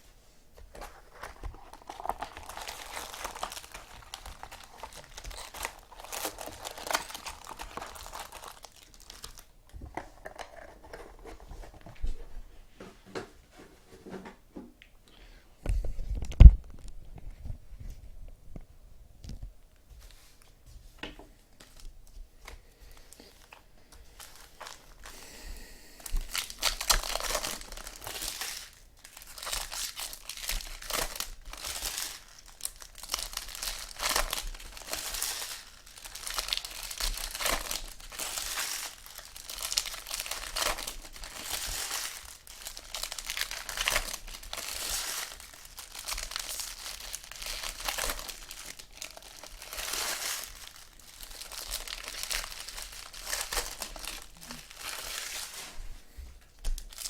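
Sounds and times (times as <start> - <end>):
card wrappers crinkling and tearing: 0.7 - 11.9, 22.9 - 25.2, 26.0 - 55.8, 56.5 - 57.0.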